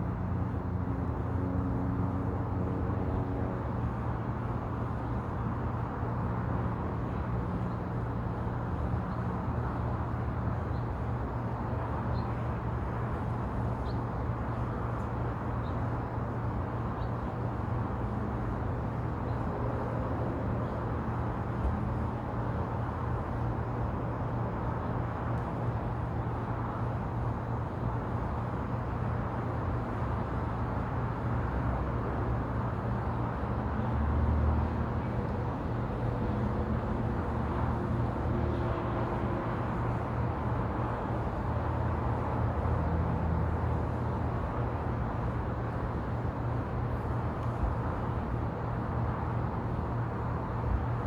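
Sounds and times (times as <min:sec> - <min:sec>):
wind: 0:00.0 - 0:51.0
distant road traffic: 0:11.9 - 0:51.0.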